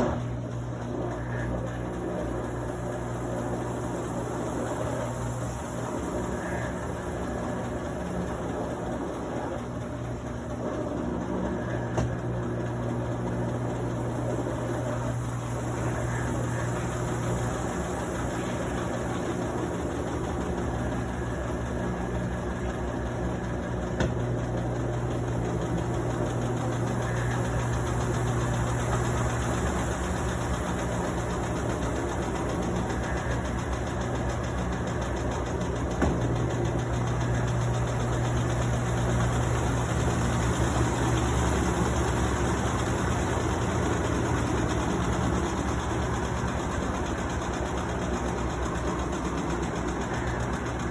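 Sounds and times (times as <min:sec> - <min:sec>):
washing machine motor hum: 0:00.0 - 0:50.9.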